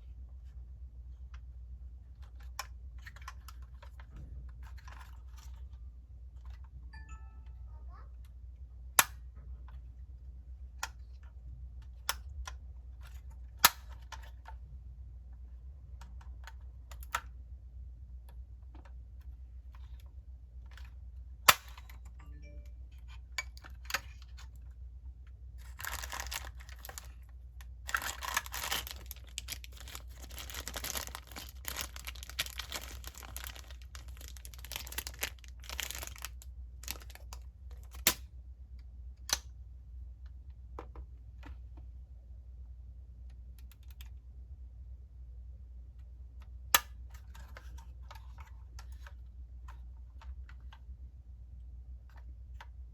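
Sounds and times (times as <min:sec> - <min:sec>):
packaging clicks and taps: 0:25.6 - 0:27.2, 0:27.9 - 0:38.2
plastic wrap crinkling: 0:25.6 - 0:38.0.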